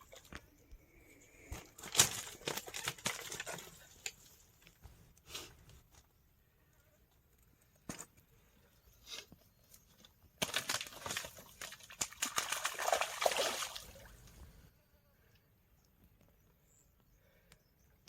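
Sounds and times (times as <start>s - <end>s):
water splashing and sloshing: 0.0s - 0.5s, 1.6s - 4.5s, 10.4s - 14.5s.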